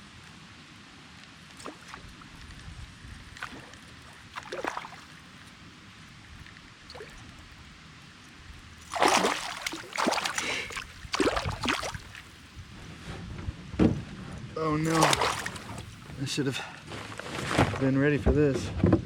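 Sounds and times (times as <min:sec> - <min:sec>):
water splashing beside a kayak: 0:01.4 - 0:12.8, 0:14.8 - 0:16.5.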